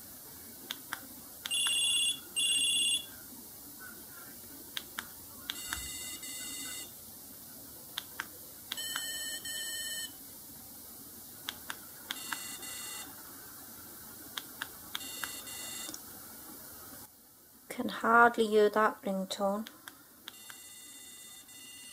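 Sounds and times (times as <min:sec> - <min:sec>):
phone ringtone through small speaker: 0:01.5 - 0:03.1, 0:05.5 - 0:06.9, 0:08.8 - 0:10.1, 0:12.2 - 0:13.1, 0:15.0 - 0:15.9, 0:20.3 - 0:21.9.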